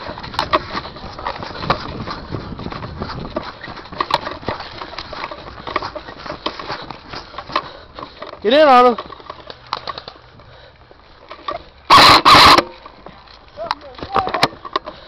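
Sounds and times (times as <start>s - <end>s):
footsteps crunching through dry leaves: 0.0s - 9.7s
twigs snapping: 9.0s - 10.2s.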